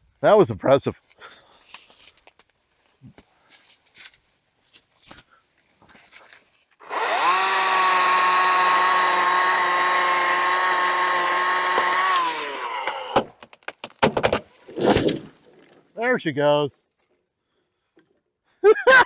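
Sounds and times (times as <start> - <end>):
electric chainsaw whining: 6.8 - 13.3.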